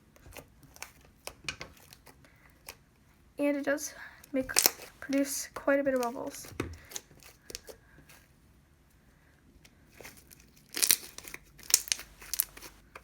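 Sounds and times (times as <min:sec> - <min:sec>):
slime crackling and popping: 0:04.4 - 0:05.3, 0:10.3 - 0:13.0.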